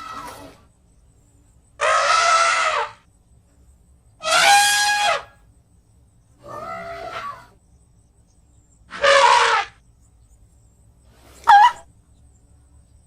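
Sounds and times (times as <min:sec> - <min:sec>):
elephant trumpeting: 0:00.0 - 0:00.6, 0:01.8 - 0:03.0, 0:04.2 - 0:05.4, 0:06.4 - 0:07.5, 0:08.9 - 0:09.8, 0:11.4 - 0:11.8.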